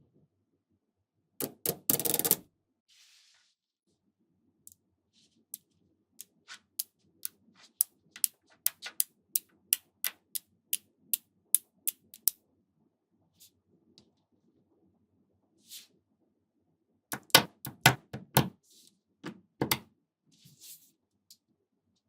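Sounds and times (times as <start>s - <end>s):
magnetic balls clicking together: 1.4s - 2.4s, 7.2s - 10.4s, 11.9s - 12.4s.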